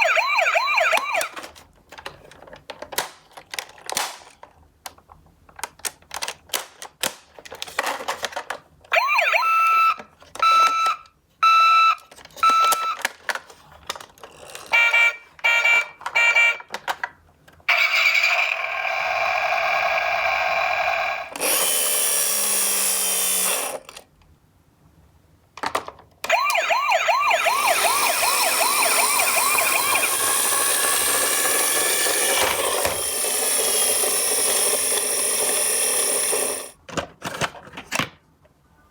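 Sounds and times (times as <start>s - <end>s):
toy electronic sirens: 0.0s - 1.5s, 8.9s - 13.0s, 14.7s - 16.7s, 17.7s - 23.6s, 26.3s - 36.7s.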